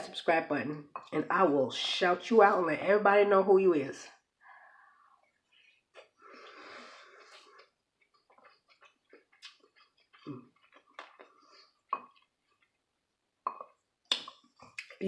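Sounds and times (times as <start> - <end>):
wet chewing clicks: 7.2 - 12.8, 13.7 - 15.0.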